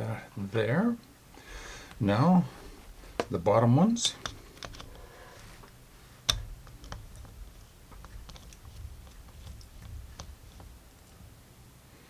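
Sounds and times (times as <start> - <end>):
screwdriver clicking on metal screws: 4.0 - 11.2.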